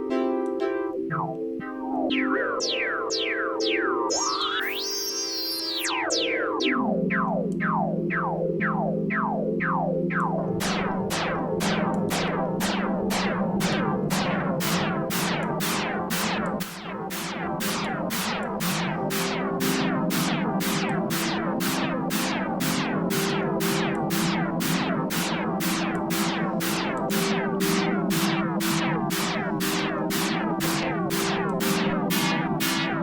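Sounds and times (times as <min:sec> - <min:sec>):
synthesizer zapping notes: 0:01.0 - 0:33.0
held low synth note: 0:07.2 - 0:33.0.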